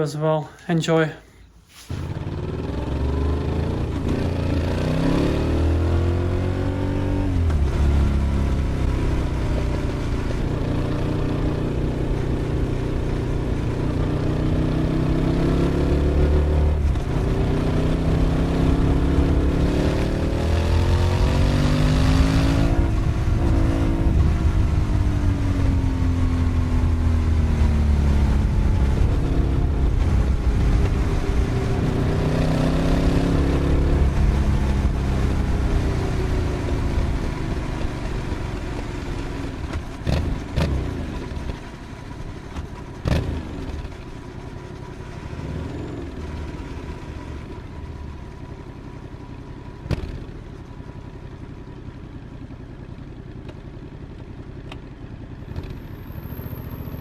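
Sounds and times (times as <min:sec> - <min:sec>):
motorcycle engine running: 0:02.1 - 0:57.0.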